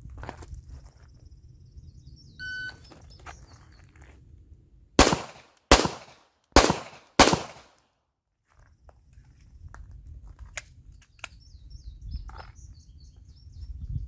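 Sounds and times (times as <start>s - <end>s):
handgun shots: 5.0s - 7.7s.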